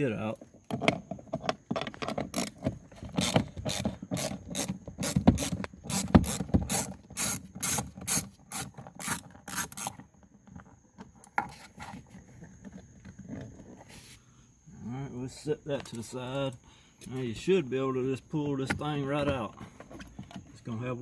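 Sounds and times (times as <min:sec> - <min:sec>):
hand ratchet clicking: 0:02.3 - 0:10.0.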